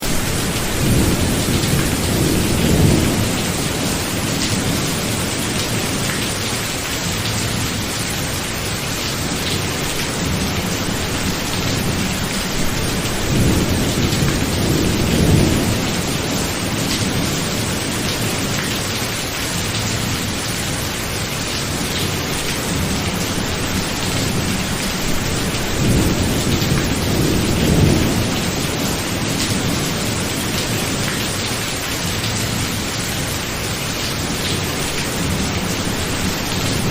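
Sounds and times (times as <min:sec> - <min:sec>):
steady rain falling: 0:00.0 - 0:36.9
low rolls of thunder: 0:10.2 - 0:17.8, 0:22.8 - 0:30.3.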